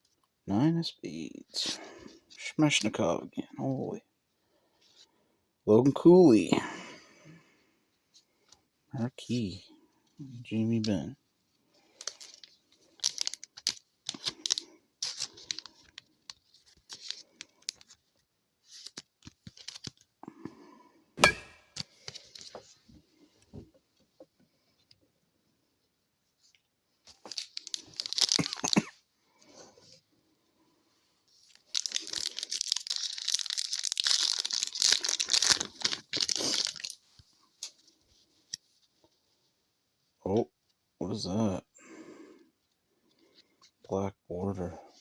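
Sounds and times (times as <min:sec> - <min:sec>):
foil wrapper tearing and crinkling: 0:12.0 - 0:17.9, 0:27.1 - 0:28.9, 0:31.5 - 0:37.8
cards rustling and flicking: 0:12.0 - 0:18.0, 0:18.6 - 0:20.1.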